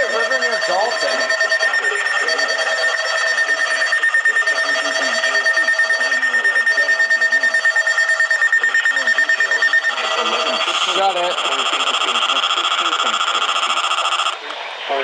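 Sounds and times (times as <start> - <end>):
faint broadcast voice: 0.0 - 15.0
pulsing electronic alarm tone: 0.0 - 15.0.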